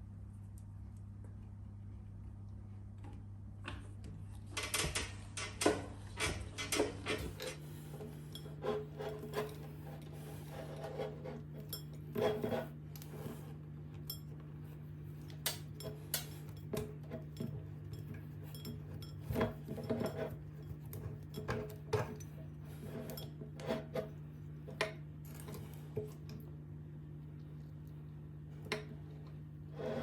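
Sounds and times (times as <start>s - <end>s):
clicking and scraping: 4.5s - 14.2s.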